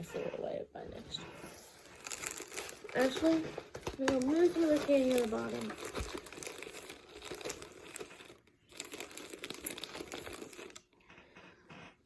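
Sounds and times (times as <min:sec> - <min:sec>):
plastic packaging crinkling: 0:01.8 - 0:11.0.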